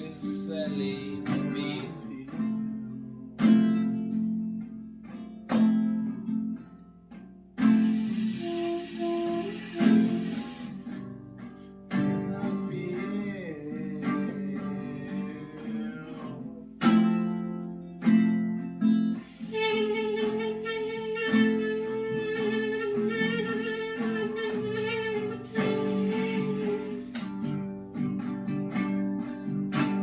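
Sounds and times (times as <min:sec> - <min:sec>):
acoustic guitar strumming: 0:00.0 - 0:30.0
held wavering melody note: 0:19.6 - 0:27.1.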